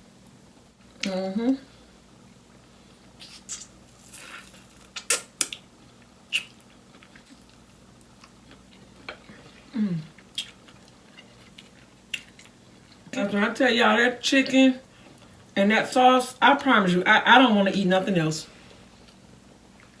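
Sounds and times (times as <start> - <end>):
wet mouth clicks: 3.2 - 5.6, 6.3 - 6.6
crunchy chewing: 3.2 - 13.0.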